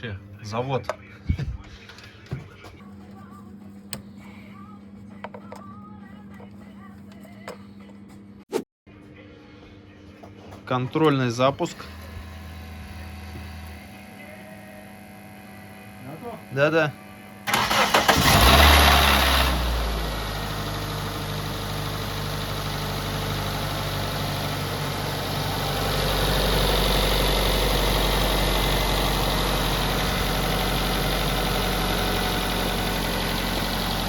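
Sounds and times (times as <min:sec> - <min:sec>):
car engine starting and idling: 0:11.7 - 0:13.8, 0:17.5 - 0:34.0.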